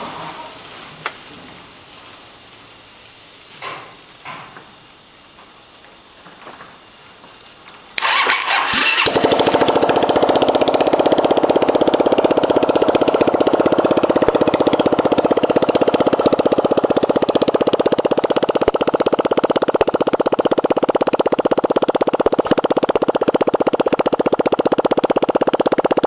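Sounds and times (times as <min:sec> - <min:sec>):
engine idling: 0:08.0 - 0:26.0
engine starter cranking: 0:08.0 - 0:26.0.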